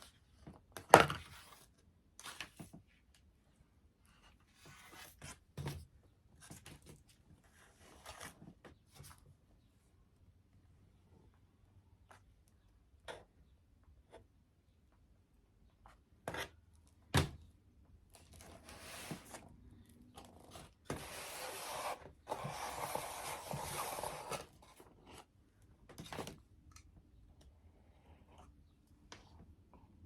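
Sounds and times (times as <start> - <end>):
foam board rubbing and scraping: 20.9 - 24.6.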